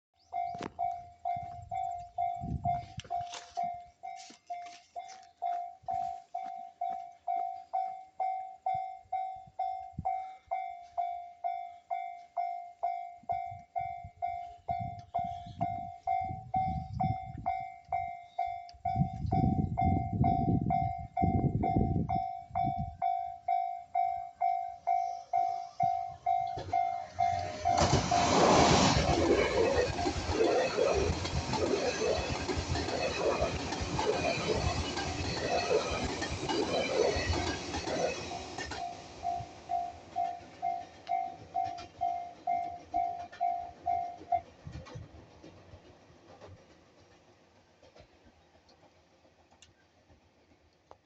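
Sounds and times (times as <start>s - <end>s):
train passing with wheel rush: 0.2s - 51.0s
level crossing bell dinging: 0.4s - 28.4s.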